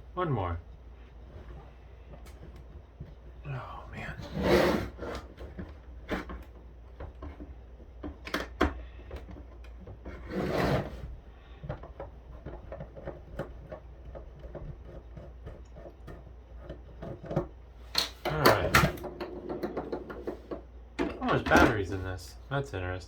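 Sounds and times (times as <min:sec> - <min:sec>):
loud scrape: 0:04.2 - 0:05.2, 0:10.2 - 0:11.0.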